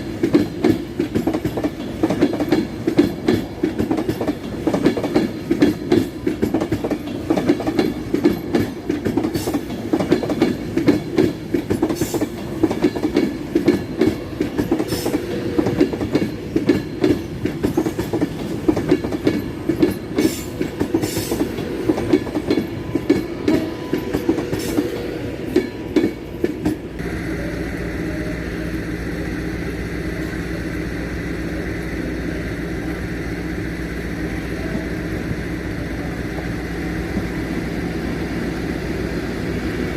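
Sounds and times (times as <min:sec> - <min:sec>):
train wheels clattering over rail joints: 0:00.0 - 0:27.0
train rumble: 0:00.0 - 0:39.9.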